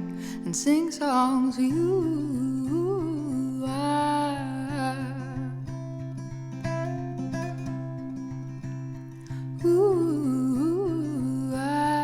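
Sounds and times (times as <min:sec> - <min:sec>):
acoustic guitar picking: 0:00.0 - 0:12.0
person singing: 0:00.4 - 0:05.6, 0:09.6 - 0:12.0.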